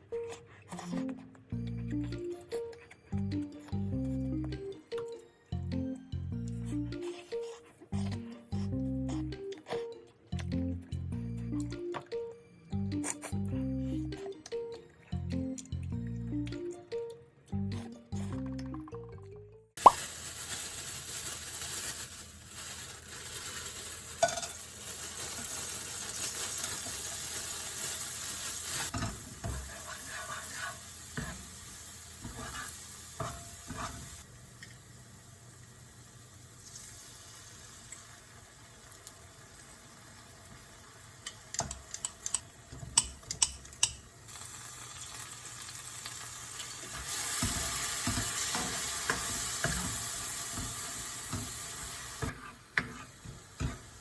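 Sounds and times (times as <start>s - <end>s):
food sizzling in a frying pan: 19.8s - 54.0s
spatula clicking against pan: 41.2s - 44.0s.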